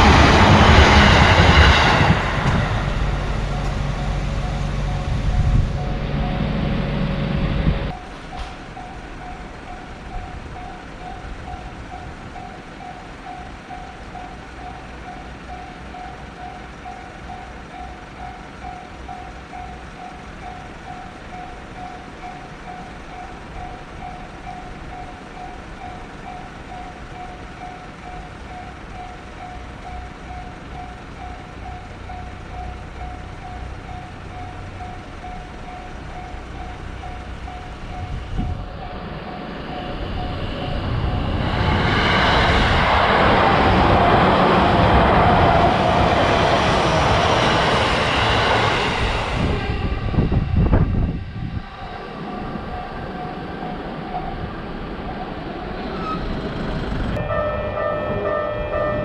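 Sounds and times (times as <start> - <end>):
low rumble: 0.0 - 10.8, 29.6 - 59.0
railroad crossing bell ringing: 0.0 - 59.0.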